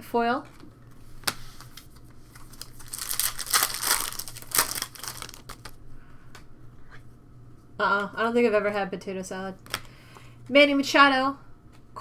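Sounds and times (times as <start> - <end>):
foil wrapper tearing and crinkling: 2.3 - 5.8.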